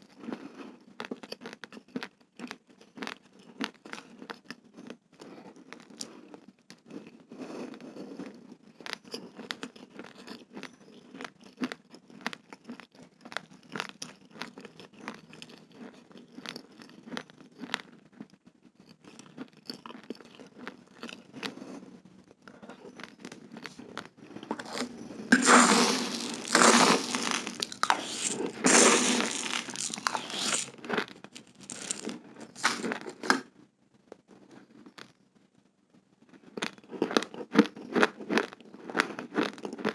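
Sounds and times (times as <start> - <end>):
raw rice being crunched: 24.6 - 30.7, 31.3 - 33.4.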